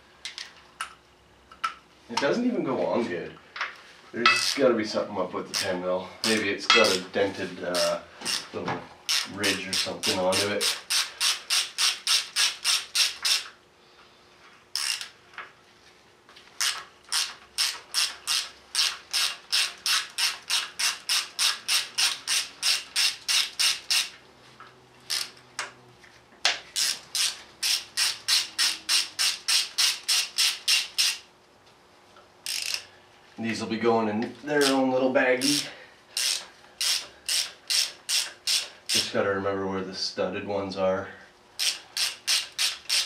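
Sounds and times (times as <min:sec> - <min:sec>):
ratchet wrench clicking: 0:09.1 - 0:13.6, 0:14.7 - 0:15.2, 0:16.6 - 0:24.2, 0:25.0 - 0:25.4, 0:26.8 - 0:31.2, 0:32.4 - 0:32.9, 0:35.4 - 0:39.1, 0:41.6 - 0:43.0.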